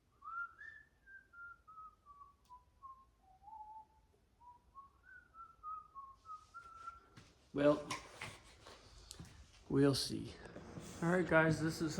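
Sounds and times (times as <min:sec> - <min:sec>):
man whistling a tune: 0:00.1 - 0:07.2.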